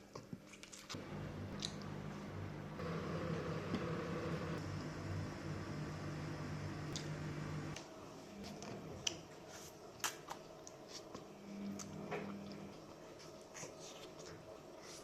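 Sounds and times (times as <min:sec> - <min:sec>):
low steady hum: 0:01.0 - 0:09.3.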